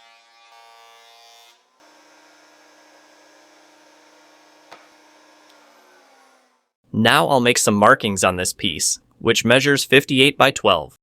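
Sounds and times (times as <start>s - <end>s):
power tool motor humming: 0.0s - 6.8s.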